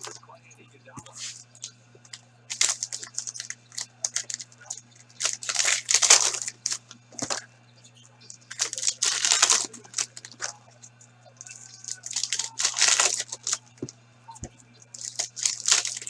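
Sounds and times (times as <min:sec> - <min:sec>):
wrappers tearing and crinkling: 0:01.0 - 0:01.6, 0:02.5 - 0:07.4, 0:08.3 - 0:10.6, 0:11.4 - 0:13.9, 0:14.9 - 0:16.0.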